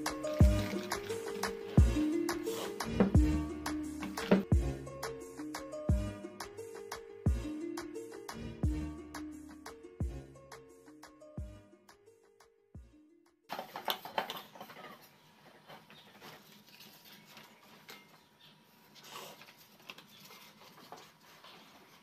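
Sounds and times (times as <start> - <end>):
background music: 0.0 - 13.5.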